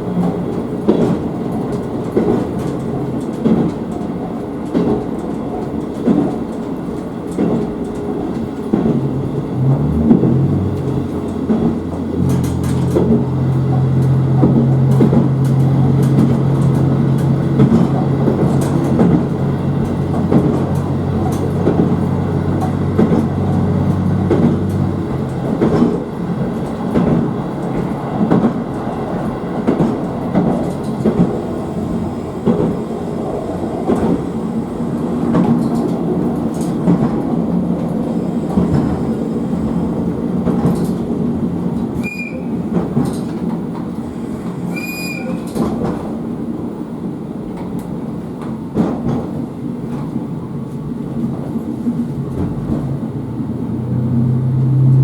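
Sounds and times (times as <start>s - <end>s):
diesel railcar rumbling: 0.0s - 55.0s
rail-joint clicks: 0.1s - 46.7s, 47.5s - 53.1s
train whistle blasts: 42.0s - 42.5s, 44.7s - 45.4s.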